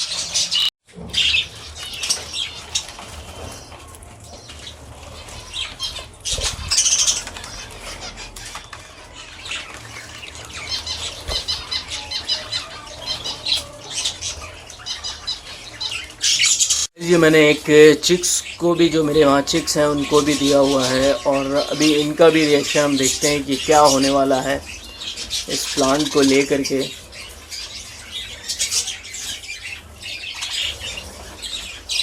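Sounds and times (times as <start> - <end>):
wing flaps and rustling: 0.0 - 14.7
budgies chirping: 0.0 - 32.0.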